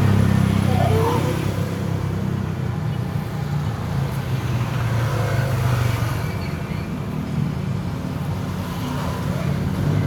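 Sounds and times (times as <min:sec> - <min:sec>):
traffic rumble: 0:00.0 - 0:04.9.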